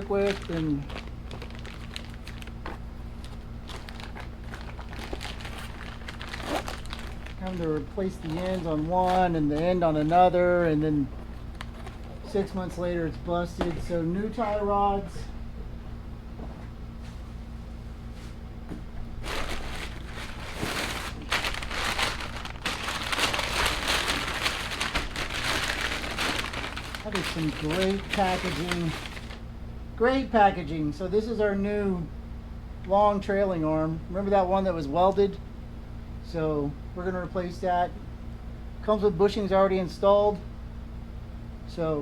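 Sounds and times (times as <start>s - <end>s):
plastic packaging crinkling: 0.0s - 12.3s, 19.2s - 29.4s
steady low hum: 0.0s - 42.0s.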